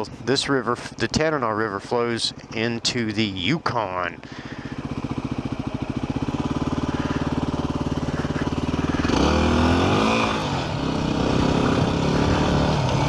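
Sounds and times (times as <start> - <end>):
motorcycle engine revving: 2.1 - 13.0.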